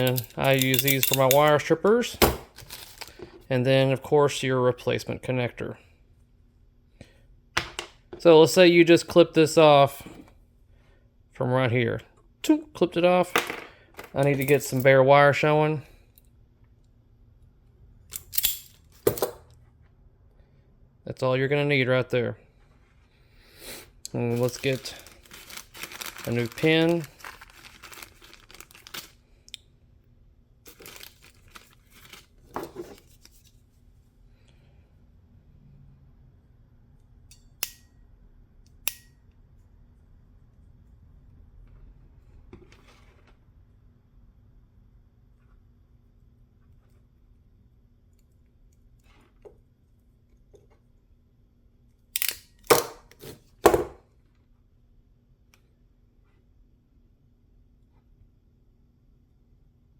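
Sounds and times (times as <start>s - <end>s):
rustling and crinkling: 2.5s - 3.4s, 24.2s - 29.2s, 30.7s - 33.8s.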